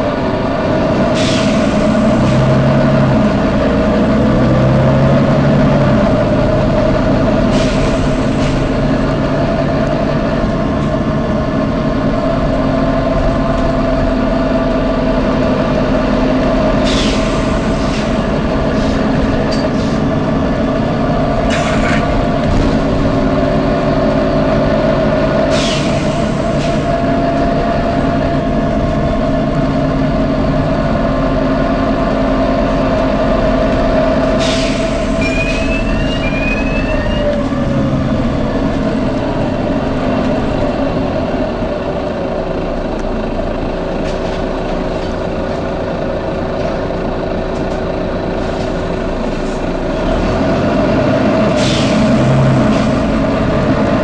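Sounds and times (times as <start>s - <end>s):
bus diesel engine droning: 0.0s - 54.0s
compressed air hisses: 1.2s - 1.8s, 16.8s - 18.2s, 25.5s - 26.8s, 34.4s - 35.2s.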